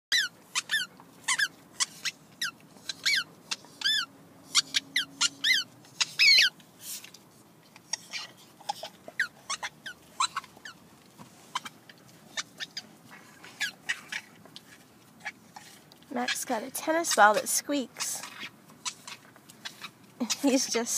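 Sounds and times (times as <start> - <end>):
squeaky toy ball squeaking: 0.1 - 6.6, 7.8 - 10.8, 11.4 - 14.3, 15.2 - 20.6.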